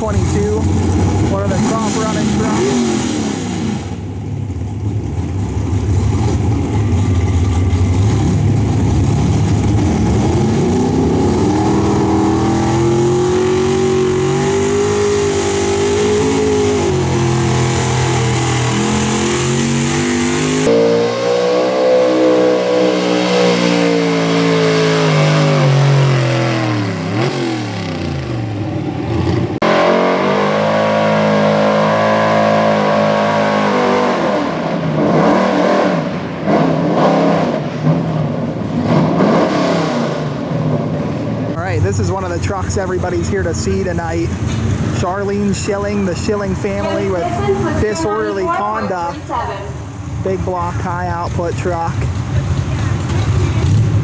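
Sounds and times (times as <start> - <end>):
pulling truck engine under load: 0.0 - 20.7, 41.6 - 54.0.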